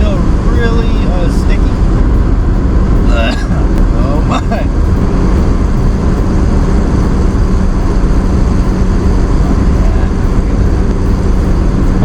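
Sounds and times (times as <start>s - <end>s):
car road and engine rumble: 0.0s - 12.0s
constant low hum: 0.0s - 12.0s.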